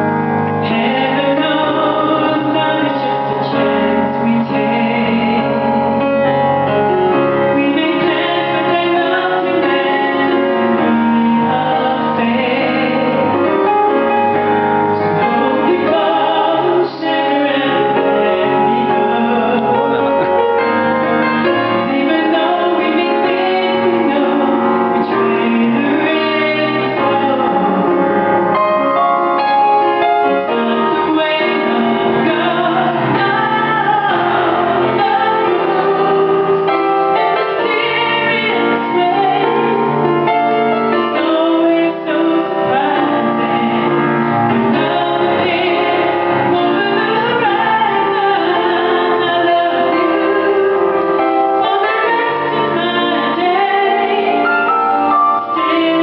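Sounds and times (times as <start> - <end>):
piano accompaniment: 0.0 - 56.0
woman singing a slow ballad: 0.6 - 6.0, 7.5 - 14.1, 15.0 - 20.8, 21.4 - 28.1, 30.0 - 54.7, 55.4 - 56.0.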